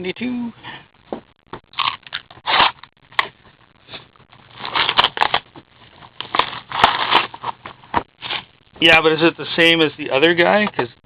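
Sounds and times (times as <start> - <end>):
card packs crinkling and tearing: 1.8 - 3.4, 4.5 - 8.5.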